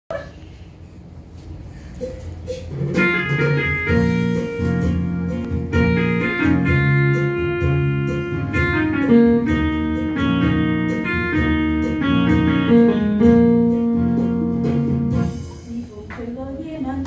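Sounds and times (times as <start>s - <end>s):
sustained keyboard chords: 2.0s - 15.8s
steady beat: 2.0s - 16.4s.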